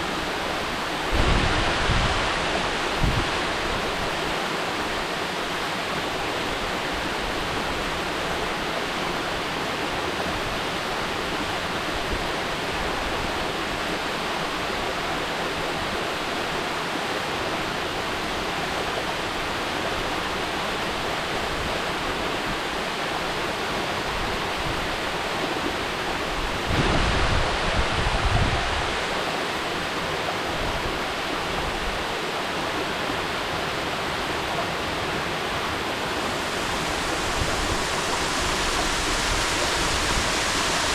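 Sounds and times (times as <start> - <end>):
waterfall pouring: 34.4 - 40.9
low rumble: 35.7 - 40.9.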